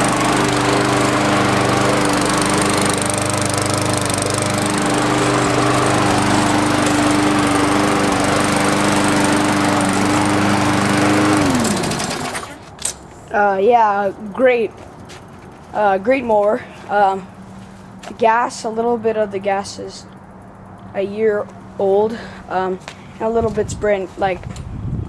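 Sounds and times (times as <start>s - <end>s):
lawn mower engine winding down: 0.0s - 12.9s.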